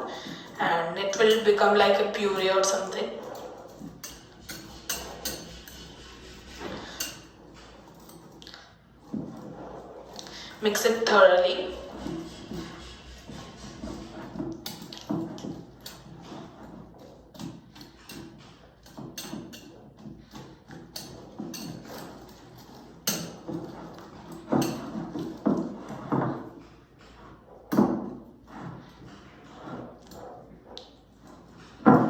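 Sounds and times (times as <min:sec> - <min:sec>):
whisk clinking against bowl: 0:03.4 - 0:07.4.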